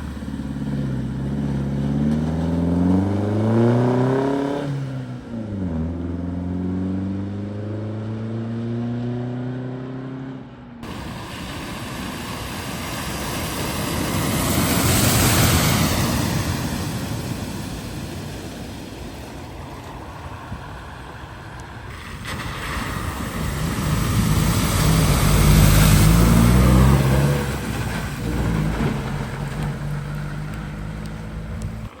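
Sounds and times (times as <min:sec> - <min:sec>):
vehicle engine driving through water: 0:00.0 - 0:09.5, 0:10.8 - 0:32.0
rush of water: 0:10.8 - 0:32.0.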